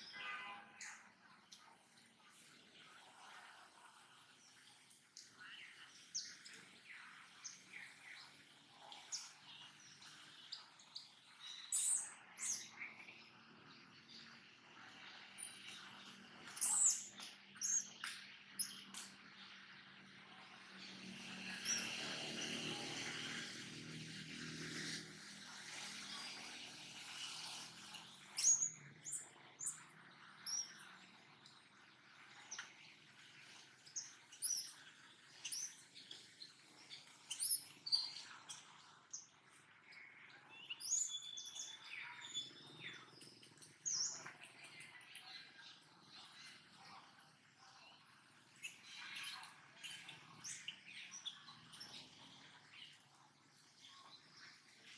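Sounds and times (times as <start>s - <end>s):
animal chirps and squeaks: 11.5s - 12.7s, 16.5s - 18.0s, 21.6s - 22.6s, 28.3s - 29.8s, 30.4s - 30.8s, 34.0s - 36.2s, 37.1s - 38.7s, 40.8s - 42.8s.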